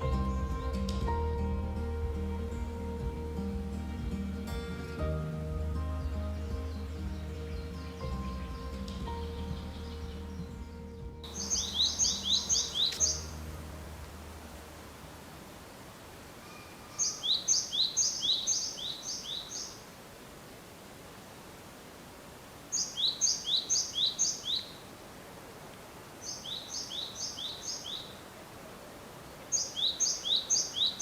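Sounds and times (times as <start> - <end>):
faint outdoor hiss: 0.0 - 31.0
songbird singing two-note call: 11.2 - 13.5.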